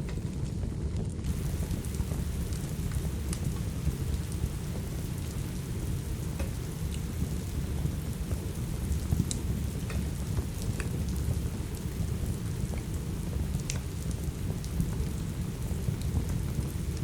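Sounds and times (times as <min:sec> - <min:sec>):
steady rain: 0:00.0 - 0:17.0
wood fire crackling and popping: 0:00.0 - 0:17.0.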